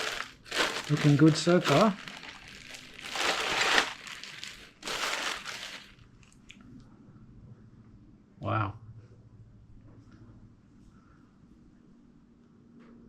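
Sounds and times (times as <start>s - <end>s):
packaging rustling: 0.0s - 6.4s.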